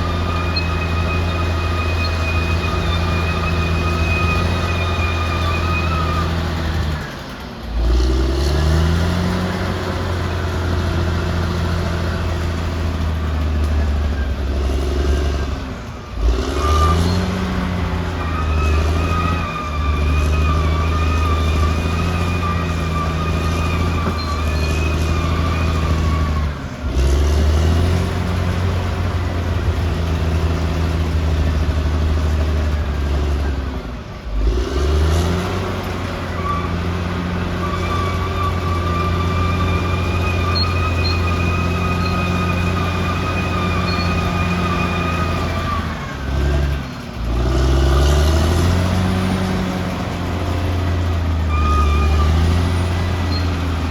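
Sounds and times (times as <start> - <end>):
bulldozer diesel engine under load: 0.0 - 53.9.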